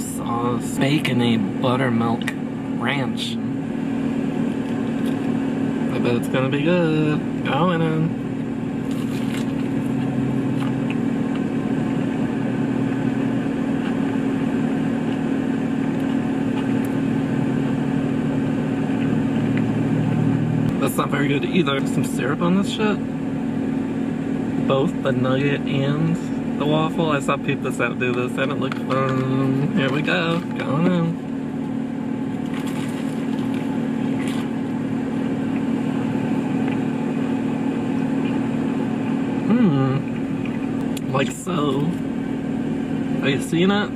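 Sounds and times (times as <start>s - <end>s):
car engine idling: 0.0s - 43.9s
low mechanical hum: 0.0s - 43.9s
crunchy food biting: 8.8s - 11.5s, 32.4s - 34.5s.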